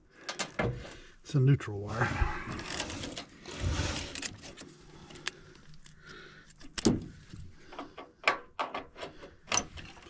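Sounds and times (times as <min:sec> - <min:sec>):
wire rustling and scraping: 0:02.0 - 0:05.9.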